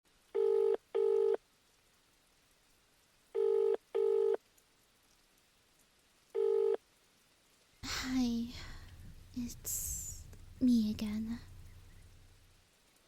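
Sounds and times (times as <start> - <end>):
telephone double ring tone: 0.4 - 1.4, 3.4 - 4.4, 6.4 - 6.8.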